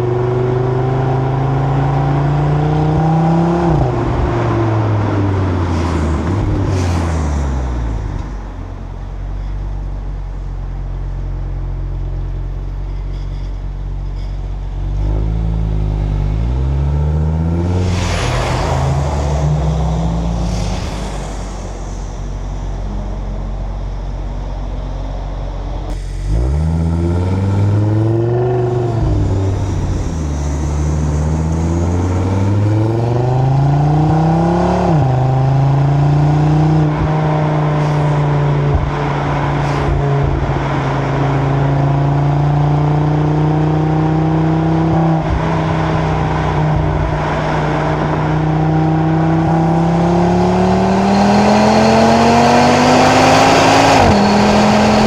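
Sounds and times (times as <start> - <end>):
car engine accelerating hard: 0.0 - 11.0, 14.9 - 55.0
wind and road noise: 0.0 - 55.0.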